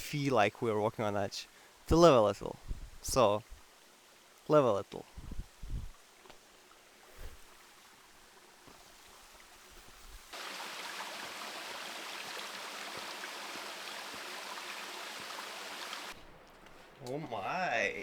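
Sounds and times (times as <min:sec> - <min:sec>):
waterfall rushing: 0:10.4 - 0:16.2.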